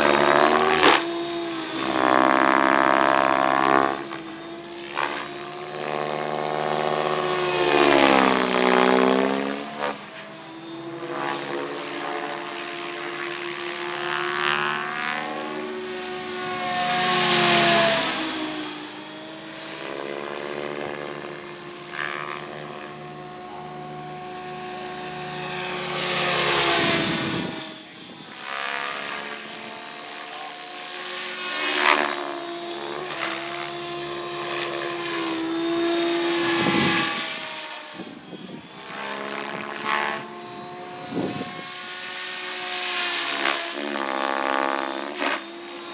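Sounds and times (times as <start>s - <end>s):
model helicopter motor whine: 0.0s - 45.9s.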